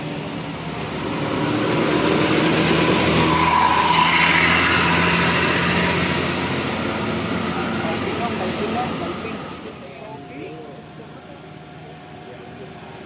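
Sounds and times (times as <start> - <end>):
vehicle passing by: 0.0 - 9.9.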